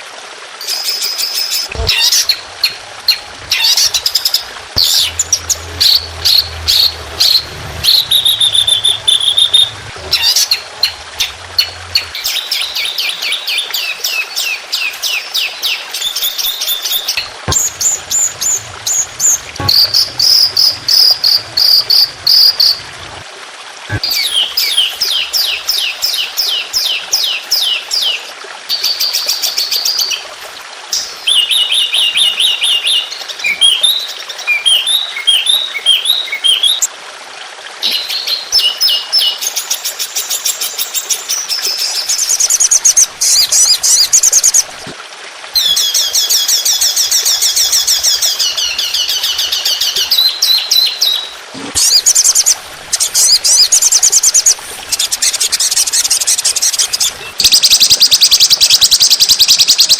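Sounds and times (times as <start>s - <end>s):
songbird chirps and trills: 0.6s - 23.2s.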